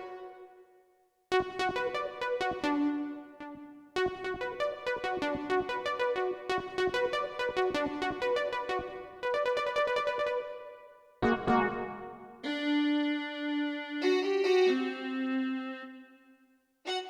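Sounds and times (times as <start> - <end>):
synthesizer fast pitched notes: 11.2 - 12.4.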